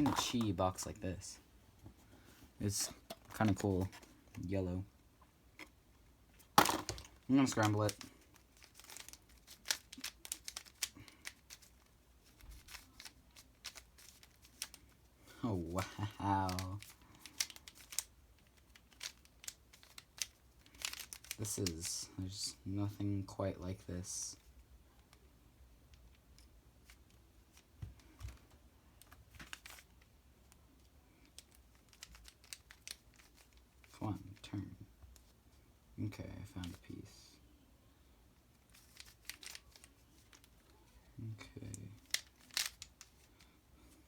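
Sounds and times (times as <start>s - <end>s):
puzzle cube clicking: 6.7s - 11.7s, 16.4s - 21.4s, 41.9s - 43.3s
plastic puzzle cube clicks: 42.0s - 43.3s.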